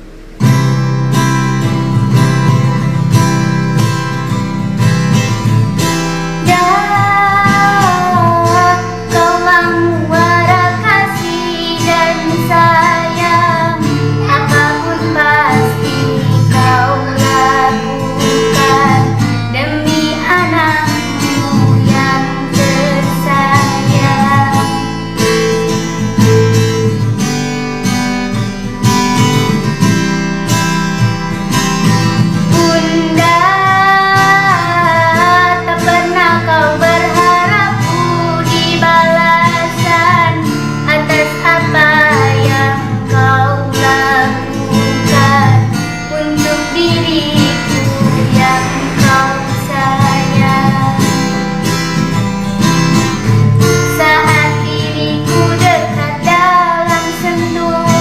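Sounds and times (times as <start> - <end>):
karaoke backing track with guitar: 0.0 - 58.0
child singing: 6.4 - 24.8, 32.4 - 51.3, 53.8 - 58.0.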